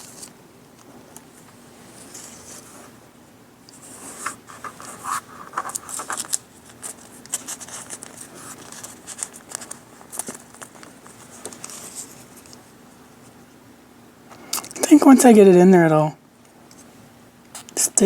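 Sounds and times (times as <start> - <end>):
paper and plastic crinkling: 4.0 - 12.6.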